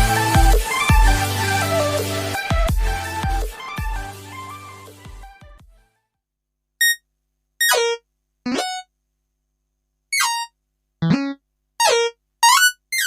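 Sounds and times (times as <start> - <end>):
sliding synth cartoon effects: 7.6 - 8.9, 10.1 - 13.0.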